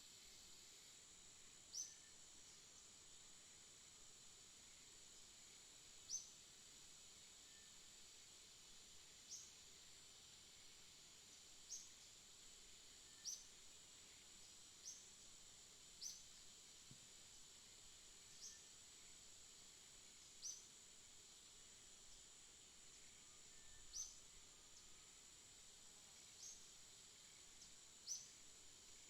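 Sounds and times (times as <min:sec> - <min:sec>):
faint bird chirps: 0:01.7 - 0:02.6, 0:06.0 - 0:06.4, 0:13.0 - 0:15.1, 0:16.0 - 0:16.4, 0:18.2 - 0:18.8, 0:20.3 - 0:20.7, 0:22.9 - 0:25.0, 0:26.1 - 0:29.0.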